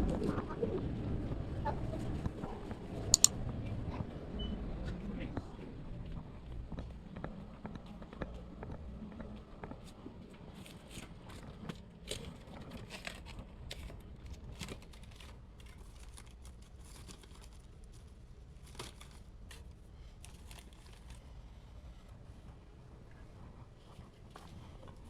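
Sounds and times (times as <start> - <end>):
plastic packaging crinkling: 14.4 - 19.3.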